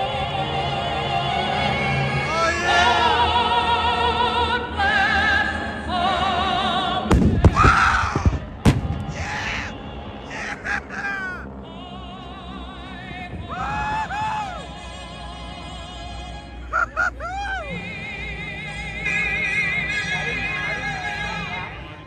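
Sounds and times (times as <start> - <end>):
dramatic music with operatic singing: 0.0 - 19.6
pyrotechnic explosions banging: 7.1 - 9.4.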